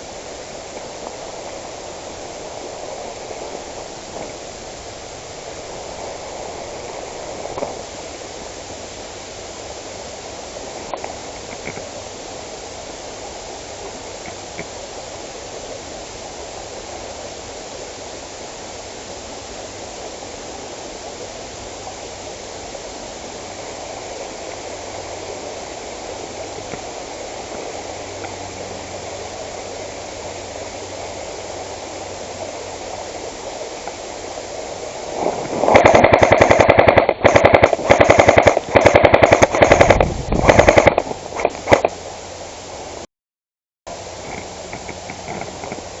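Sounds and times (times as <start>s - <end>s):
steady background hiss: 0.0s - 43.0s, 43.9s - 46.0s
airsoft gun firing bursts: 35.6s - 41.9s.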